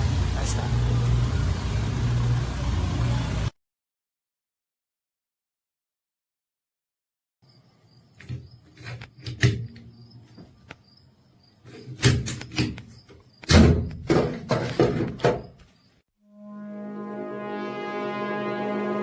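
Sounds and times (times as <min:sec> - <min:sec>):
hard objects clicking and knocking: 0:11.7 - 0:15.7
music with low horn tone: 0:16.2 - 0:19.0.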